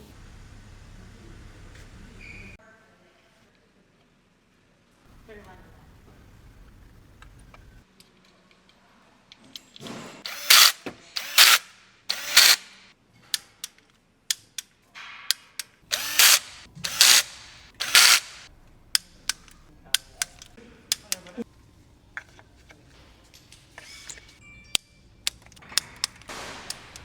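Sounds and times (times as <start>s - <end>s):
power tool running in bursts: 10.3s - 12.7s, 15.9s - 18.5s
sharp metallic clicks: 10.3s - 12.8s, 14.3s - 14.7s, 15.3s - 21.3s.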